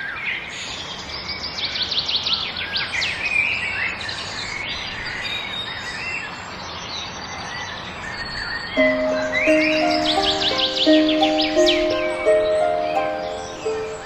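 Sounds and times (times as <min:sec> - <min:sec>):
songbirds chirping and singing: 0:08.1 - 0:14.0
bird trill: 0:08.8 - 0:14.0
outdoor ambient hiss: 0:08.8 - 0:14.0.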